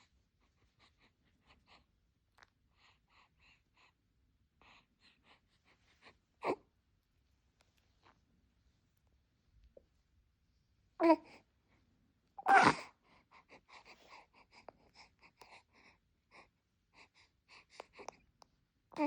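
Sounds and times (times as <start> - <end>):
baby sneezing: 12.4 - 12.9
faint quick baby sounds: 12.4 - 13.0
baby squeaking: 12.5 - 12.8.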